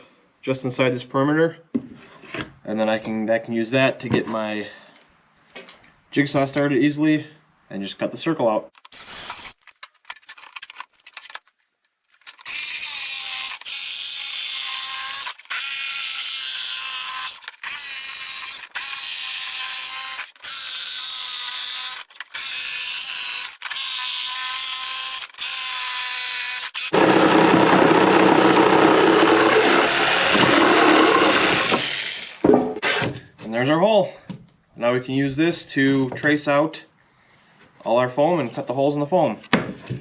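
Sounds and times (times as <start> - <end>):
jigsaw cutting wood: 8.8 - 9.6, 12.3 - 33.1
power drill drilling wood: 8.8 - 9.8, 12.4 - 33.1.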